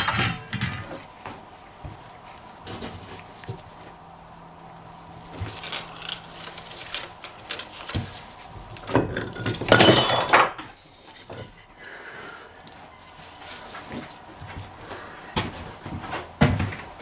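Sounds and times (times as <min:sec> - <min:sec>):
metal rattling clatter: 0:08.8 - 0:11.5
metal parts clinking: 0:09.1 - 0:10.7.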